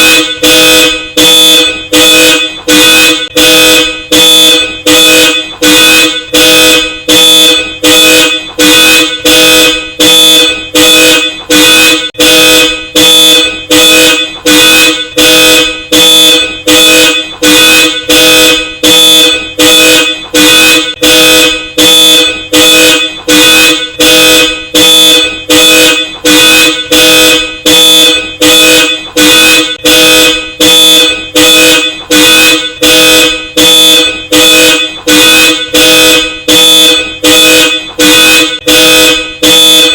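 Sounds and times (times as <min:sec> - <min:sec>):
car alarm horn honks: 0:00.0 - 0:39.9.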